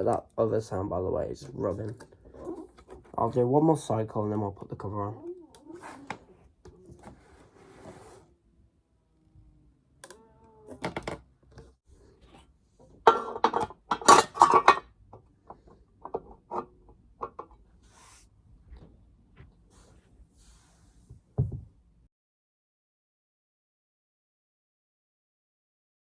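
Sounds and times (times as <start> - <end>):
metallic clattering and knocking: 13.0 - 14.9.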